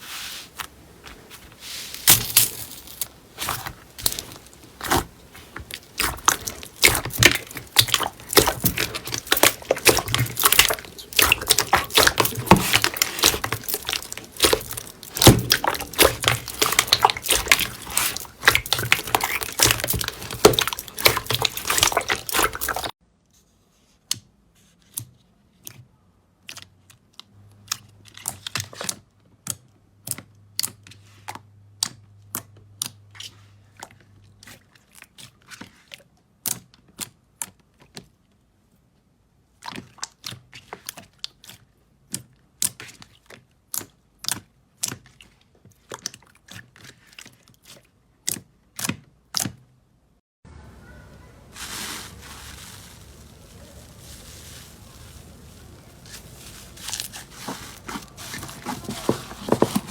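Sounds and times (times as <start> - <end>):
slime squelching and crackling: 0.0 - 23.0, 51.4 - 59.9.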